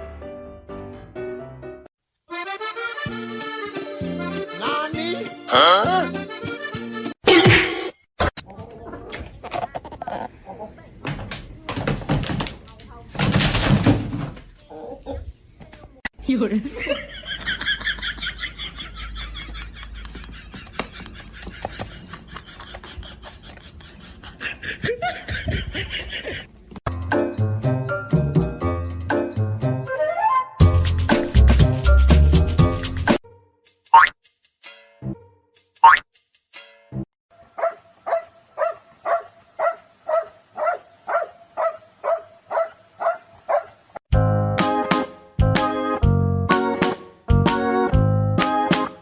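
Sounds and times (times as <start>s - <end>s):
flute melody music: 2.3s - 7.2s, 27.2s - 33.5s, 44.1s - 49.0s
person laughing and snickering: 16.8s - 26.6s
dog barking: 37.6s - 43.8s.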